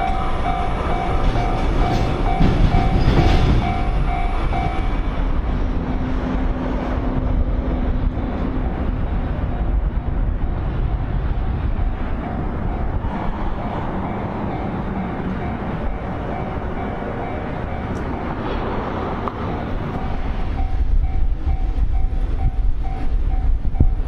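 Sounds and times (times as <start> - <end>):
level-crossing warning bell ringing: 0.0 - 6.2, 10.8 - 18.5, 19.4 - 24.0
train rolling past: 0.0 - 24.0.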